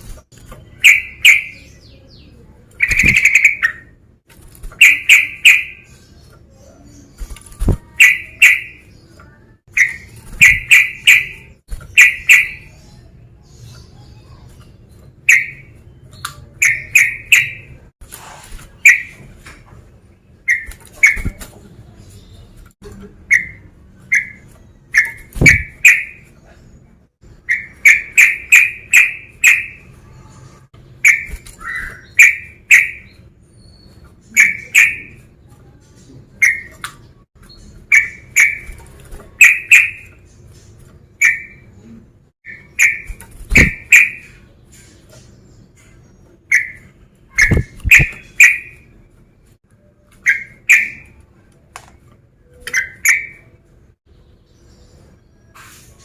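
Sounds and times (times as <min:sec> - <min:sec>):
bulbul singing whistled notes: 0:50.2 - 0:51.2.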